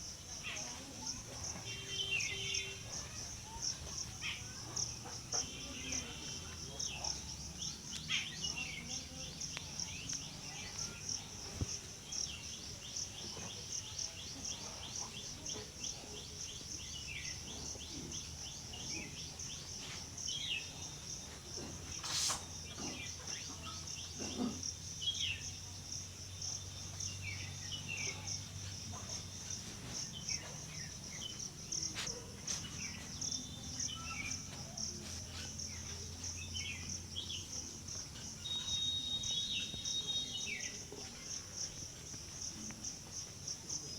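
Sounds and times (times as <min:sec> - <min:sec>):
insects trilling: 0:00.0 - 0:43.9
short bird chirps: 0:38.4 - 0:40.7.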